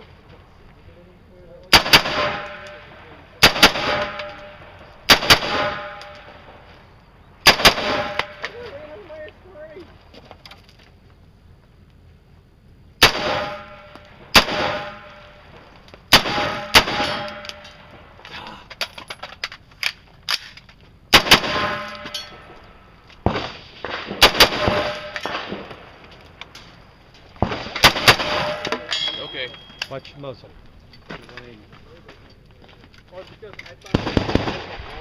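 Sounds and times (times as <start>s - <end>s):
loud rifle shots with echo: 1.7s - 6.6s, 7.4s - 8.5s, 13.0s - 15.4s, 16.1s - 17.9s, 21.1s - 22.5s, 23.2s - 25.9s, 27.4s - 29.6s, 33.9s - 35.0s
faint distant shots: 1.7s - 6.7s, 33.8s - 35.0s.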